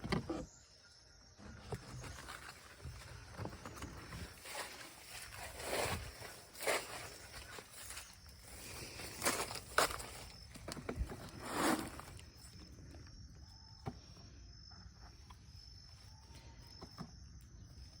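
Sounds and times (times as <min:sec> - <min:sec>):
faint high insect trill: 0:00.3 - 0:18.0
rustling and handling noise: 0:01.7 - 0:12.5.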